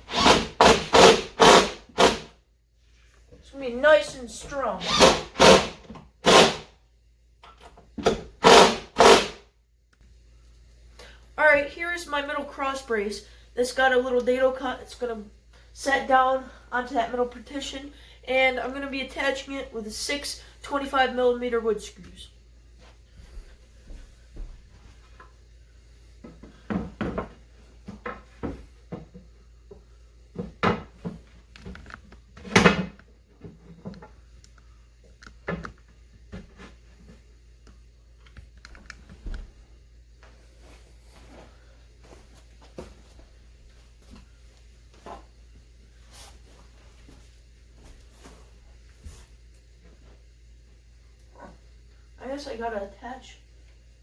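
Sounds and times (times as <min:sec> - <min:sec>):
hollow wooden knocks and clunks: 0:26.2 - 0:29.3, 0:30.4 - 0:31.8.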